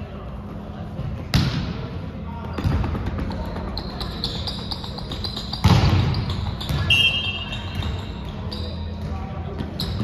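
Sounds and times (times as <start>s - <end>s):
sneakers squeaking on gym floor: 2.5s - 10.0s.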